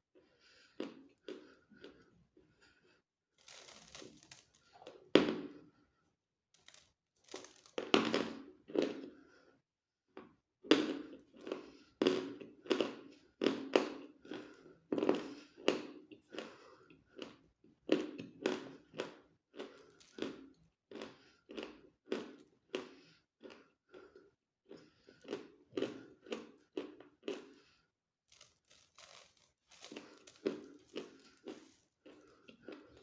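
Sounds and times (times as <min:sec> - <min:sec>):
crunchy chewing: 0:03.3 - 0:05.0, 0:06.6 - 0:07.9, 0:28.3 - 0:33.0
crinkly rustle: 0:03.4 - 0:04.7, 0:06.6 - 0:07.8, 0:28.3 - 0:31.8.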